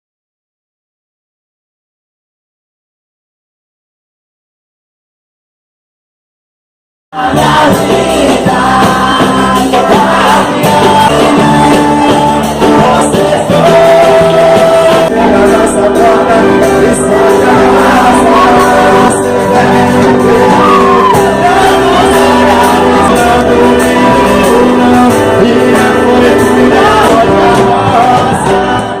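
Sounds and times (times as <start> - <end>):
band playing loud music: 7.2 - 29.0
person singing: 7.2 - 29.0
shouts: 19.6 - 25.4.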